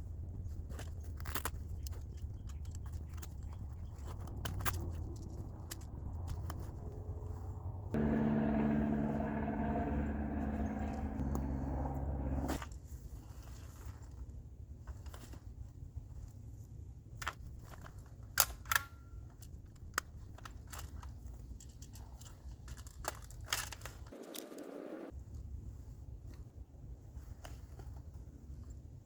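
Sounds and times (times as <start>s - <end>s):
steady low rumble: 6.4s - 12.6s.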